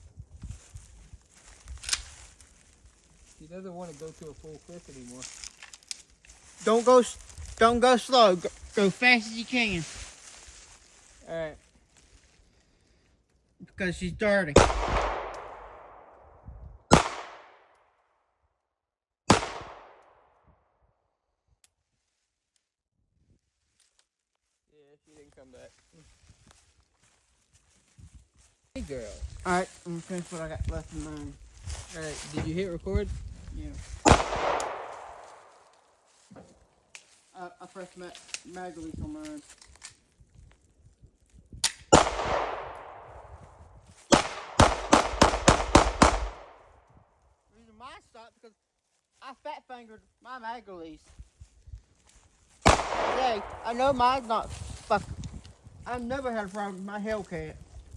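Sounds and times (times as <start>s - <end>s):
pistol shots echoing: 14.6s - 16.1s, 16.9s - 17.6s, 19.3s - 20.0s, 34.0s - 35.5s, 41.9s - 43.1s, 44.1s - 46.6s, 52.6s - 53.8s.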